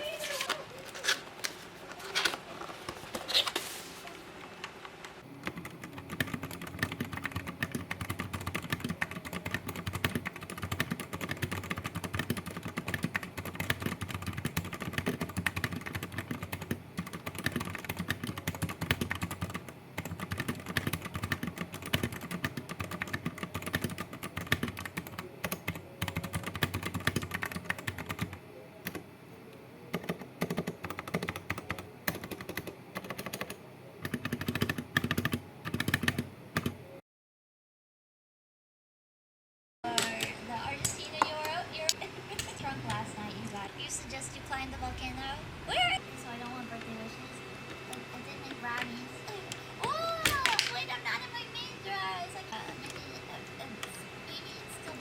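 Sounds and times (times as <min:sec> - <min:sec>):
mechanical keyboard typing: 0:05.4 - 0:29.0, 0:29.9 - 0:36.8.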